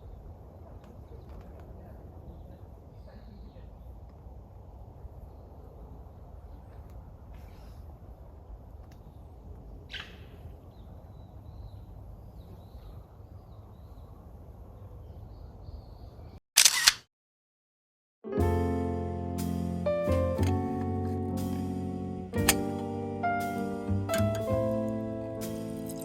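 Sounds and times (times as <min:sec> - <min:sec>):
low outdoor ambience: 0:00.0 - 0:16.8, 0:18.4 - 0:26.0
music: 0:18.2 - 0:26.0.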